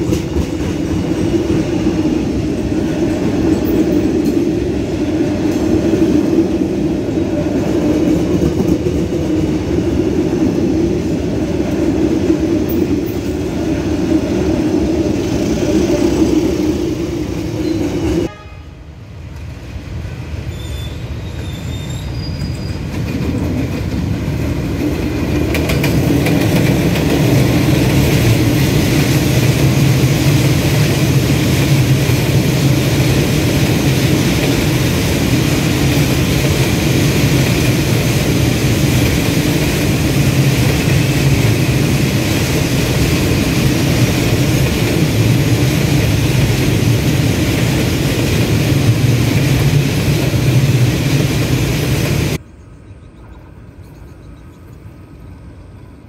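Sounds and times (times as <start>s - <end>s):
train rumbling past: 0.0s - 56.0s
train horn: 18.2s - 19.0s.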